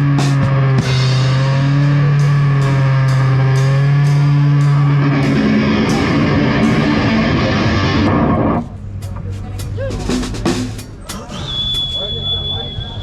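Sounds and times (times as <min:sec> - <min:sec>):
drum kit crashing cymbals: 0:00.0 - 0:08.1, 0:09.0 - 0:12.5
electric guitar: 0:00.0 - 0:08.8.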